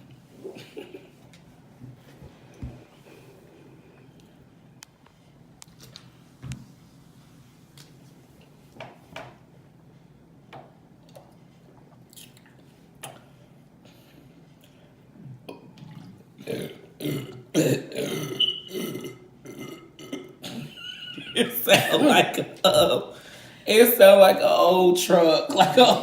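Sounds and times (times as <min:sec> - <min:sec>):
person burping: 0:15.4 - 0:23.2.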